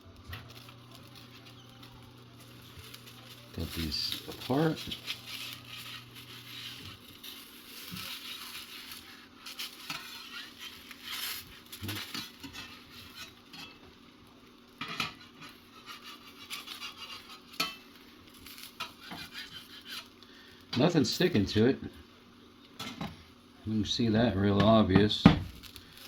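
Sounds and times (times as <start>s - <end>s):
eggs sizzling in a skillet: 0.0s - 24.4s, 25.2s - 26.0s
spatula scraping a pan: 1.2s - 13.9s, 14.7s - 20.5s.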